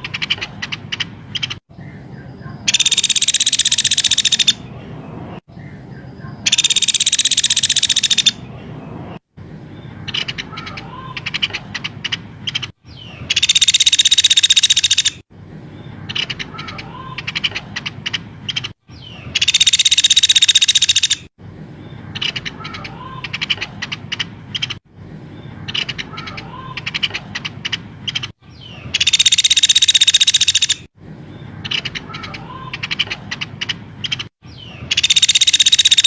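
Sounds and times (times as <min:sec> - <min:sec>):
bird chirps and clicks: 0:00.0 - 0:01.6, 0:02.7 - 0:04.6, 0:06.5 - 0:08.4, 0:10.1 - 0:15.2, 0:16.1 - 0:21.3, 0:22.2 - 0:24.8, 0:25.7 - 0:30.9, 0:31.7 - 0:36.0
bird trilling: 0:00.0 - 0:15.2, 0:15.8 - 0:21.3, 0:21.9 - 0:24.8, 0:25.4 - 0:36.0.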